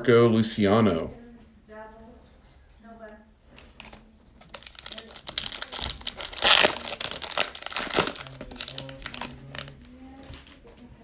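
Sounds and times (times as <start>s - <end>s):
foil wrapper crinkling: 3.7s - 10.6s.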